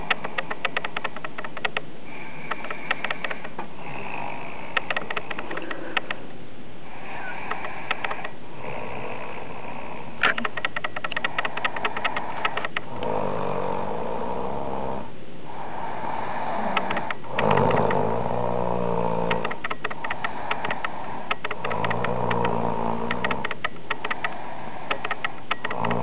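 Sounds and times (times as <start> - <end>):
quick ticking: 0.0 - 1.8, 4.8 - 6.2, 10.2 - 12.8, 19.3 - 26.0
person snoring loudly: 11.8 - 26.0.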